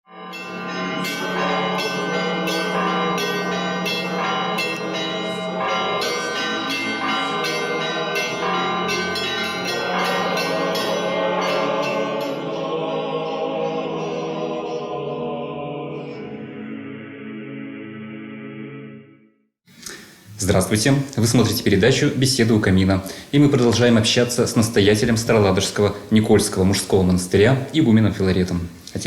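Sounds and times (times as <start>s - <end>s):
church bells pealing: 0.1s - 14.9s
choral music: 0.1s - 19.5s, 20.2s - 27.8s.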